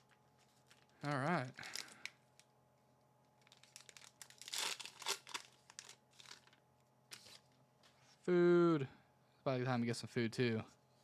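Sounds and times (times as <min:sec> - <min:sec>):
plastic foil wrapper tearing and crinkling: 0:00.7 - 0:02.5, 0:03.4 - 0:07.4.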